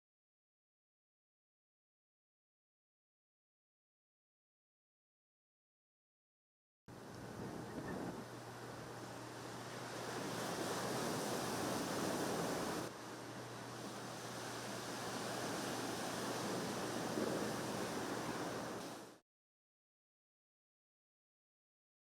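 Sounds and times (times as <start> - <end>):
ocean surf: 6.9 - 19.2
wind: 6.9 - 19.2.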